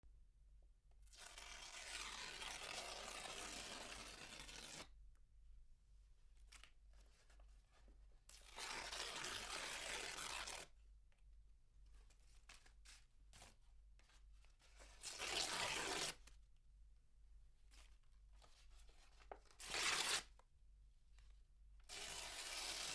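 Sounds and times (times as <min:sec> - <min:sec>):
paper tearing: 0:01.3 - 0:04.9, 0:08.5 - 0:10.7, 0:15.0 - 0:16.3, 0:19.6 - 0:20.3, 0:21.9 - 0:22.9.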